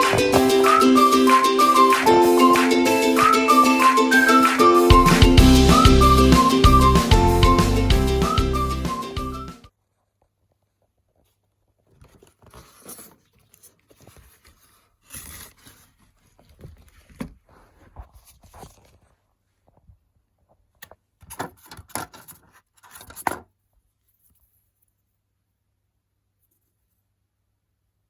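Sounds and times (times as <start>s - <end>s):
cardboard packaging rustling: 9.8s - 19.9s.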